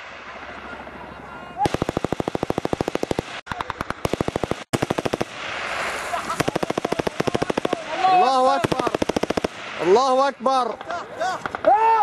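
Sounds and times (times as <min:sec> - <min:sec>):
automatic weapon fire bursts: 0:01.6 - 0:05.5, 0:06.3 - 0:10.2.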